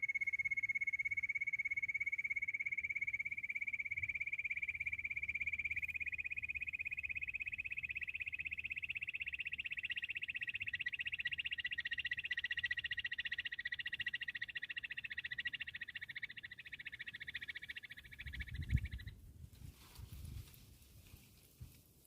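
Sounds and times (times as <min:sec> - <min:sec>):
quail trilling call: 0:04.0 - 0:19.2.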